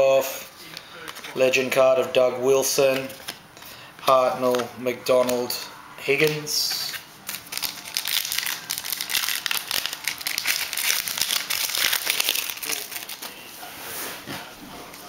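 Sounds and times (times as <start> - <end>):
plastic wrapper crinkling and tearing: 6.9 - 13.3.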